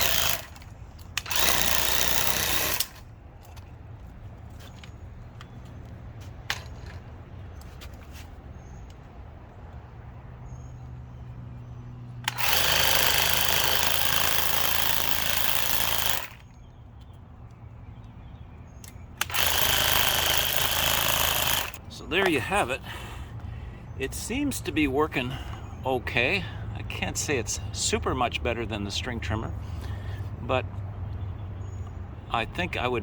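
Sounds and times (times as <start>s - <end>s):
string trimmer whirring: 0.0s - 3.1s, 12.2s - 16.5s, 19.2s - 22.0s.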